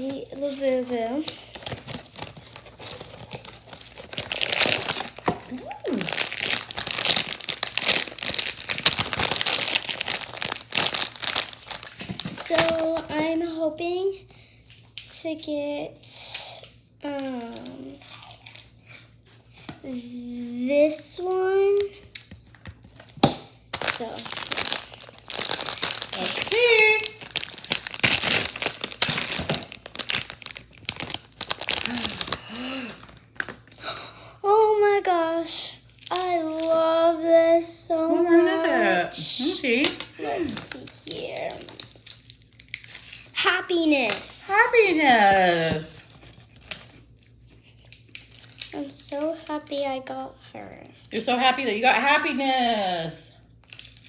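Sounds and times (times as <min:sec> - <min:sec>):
packaging crinkling and rustling: 0:00.0 - 0:13.4, 0:21.3 - 0:33.8, 0:35.8 - 0:37.2, 0:39.1 - 0:50.3, 0:53.5 - 0:54.0.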